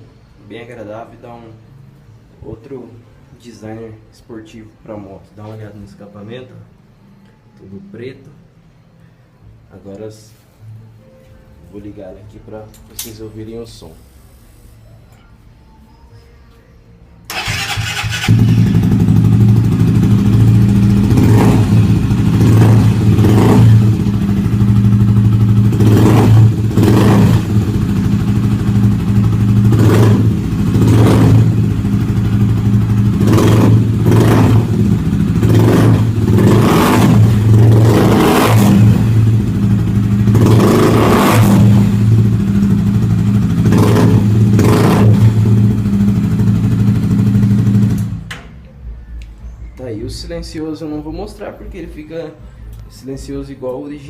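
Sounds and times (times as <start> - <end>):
motorcycle engine revving: 17.3 - 48.3.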